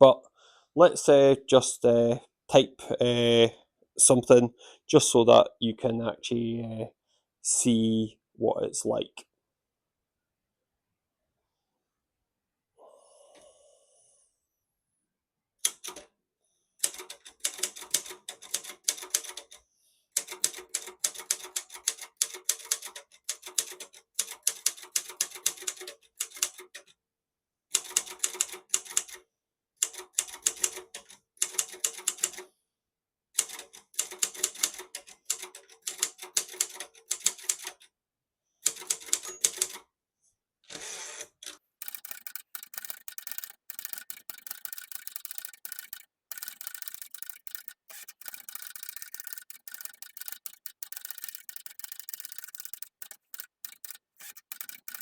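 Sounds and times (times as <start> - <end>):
typewriter keys clacking: 16.8 - 19.5, 38.7 - 39.8, 41.8 - 55.0.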